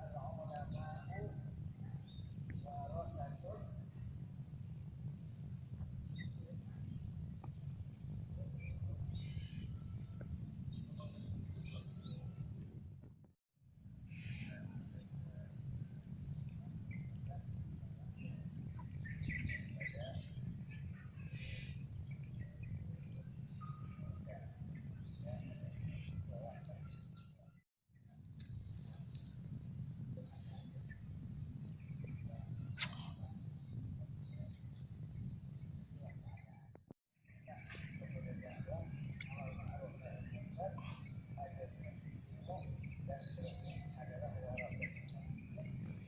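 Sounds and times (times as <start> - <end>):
insect drone: 0.0 - 46.0
bird chirps: 8.0 - 12.6, 14.2 - 27.5, 31.6 - 46.0.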